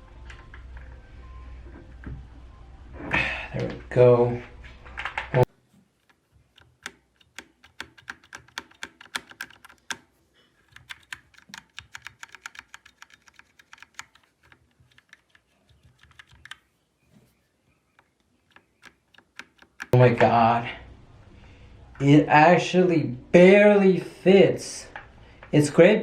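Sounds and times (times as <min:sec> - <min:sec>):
typing on computer keyboard: 0:06.0 - 0:16.6, 0:18.0 - 0:20.0.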